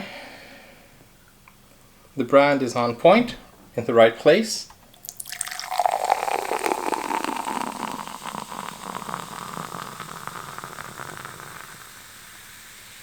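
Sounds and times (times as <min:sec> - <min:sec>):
fizz crackling: 0:04.9 - 0:13.0
juice pouring into a glass: 0:04.9 - 0:13.0.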